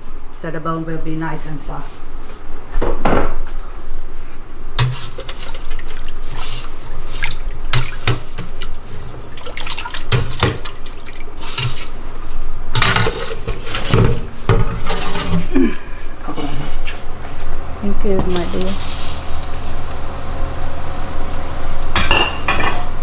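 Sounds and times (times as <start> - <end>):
water running from a tap: 4.8 - 12.0, 18.3 - 23.0
water splashing in a sink: 4.8 - 12.1.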